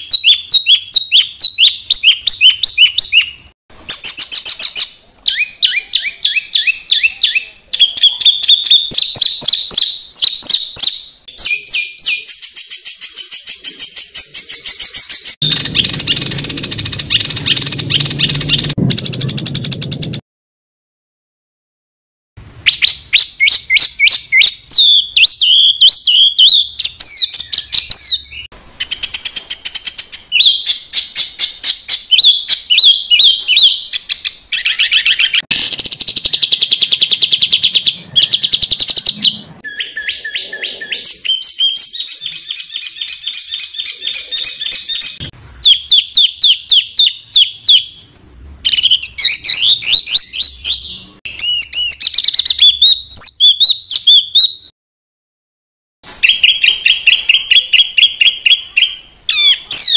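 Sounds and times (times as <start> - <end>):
songbirds singing rapid trills: 0.0 - 20.2.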